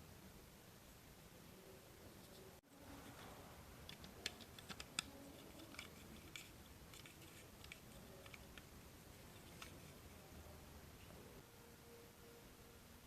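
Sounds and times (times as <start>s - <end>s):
small parts clicking: 3.8s - 10.0s.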